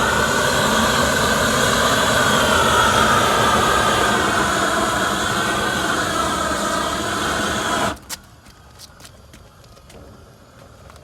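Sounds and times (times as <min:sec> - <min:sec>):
heat tool roaring: 0:00.0 - 0:08.1.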